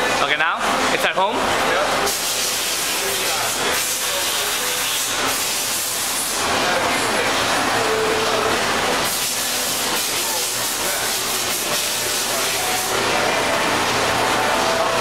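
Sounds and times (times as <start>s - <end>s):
pneumatic air hissing: 2.1s - 6.1s.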